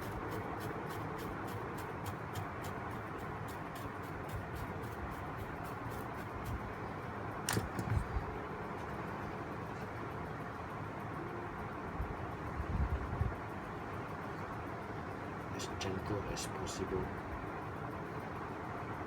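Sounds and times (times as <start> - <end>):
small brush scrubbing: 0.0 - 6.7
steady background hiss: 0.0 - 19.0.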